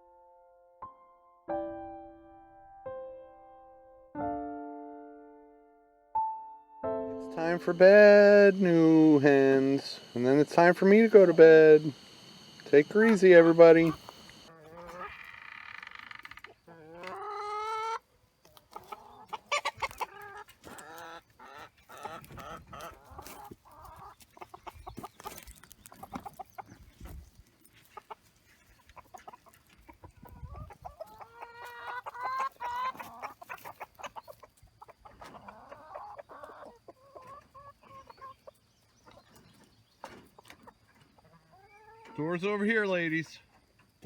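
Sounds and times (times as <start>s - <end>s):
chickens clucking: 7.2s - 44.0s
chicken squawks: 7.4s - 27.2s, 27.8s - 39.3s, 40.0s - 42.3s.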